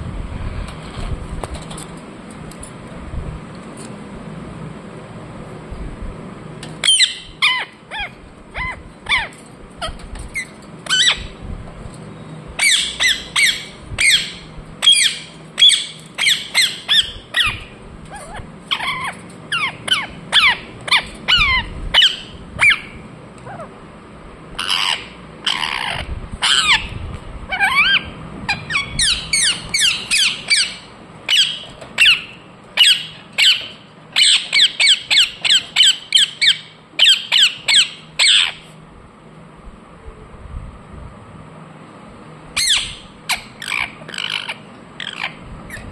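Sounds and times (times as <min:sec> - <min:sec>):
parrot chirping: 0:06.8 - 0:11.4, 0:12.6 - 0:23.7, 0:24.6 - 0:38.7, 0:42.6 - 0:45.9.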